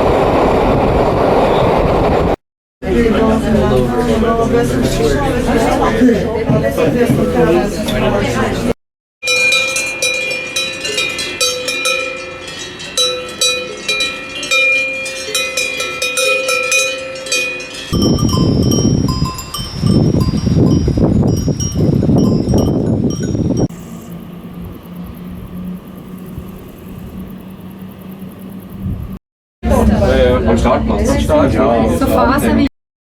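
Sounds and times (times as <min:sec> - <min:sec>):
cowbells clanking: 0:09.2 - 0:23.8.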